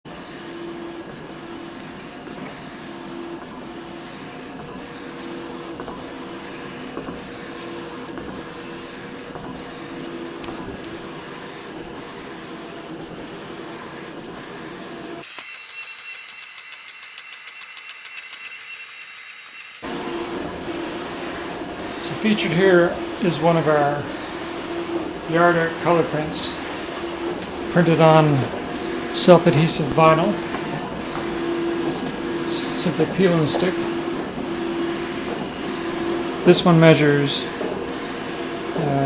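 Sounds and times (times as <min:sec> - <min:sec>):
high machine tone: 0:15.2 - 0:19.8
printer mechanical whir: 0:15.2 - 0:19.8.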